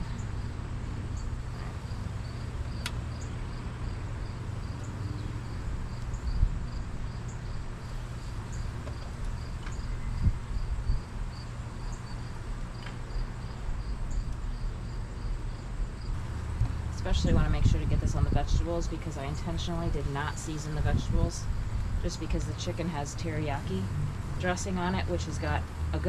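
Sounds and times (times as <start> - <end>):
crickets chirping: 0.0 - 16.9
low steady rumble: 0.0 - 26.0.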